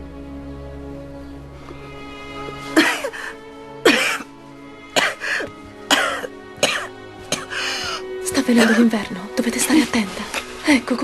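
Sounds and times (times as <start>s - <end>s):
soft film score music: 0.0s - 11.0s
woman coughing: 2.8s - 3.2s, 3.8s - 4.3s, 5.0s - 7.5s, 8.5s - 8.9s.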